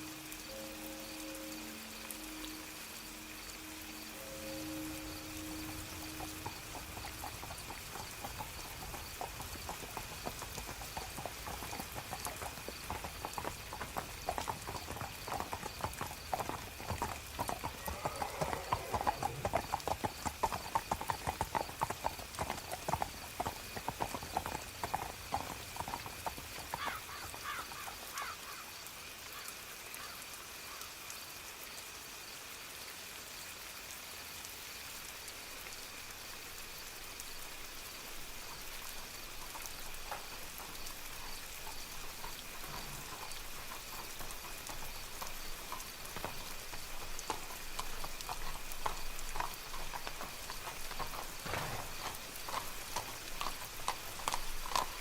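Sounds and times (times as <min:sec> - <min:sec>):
soft rain hiss: 0:00.0 - 0:55.0
horse hooves clip-clopping: 0:01.6 - 0:28.3, 0:37.5 - 0:55.0.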